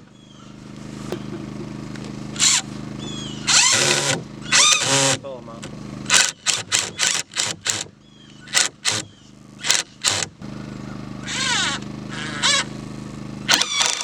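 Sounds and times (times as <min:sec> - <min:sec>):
low engine hum: 0:00.0 - 0:13.9
sharp knocks on wood: 0:01.1 - 0:01.8.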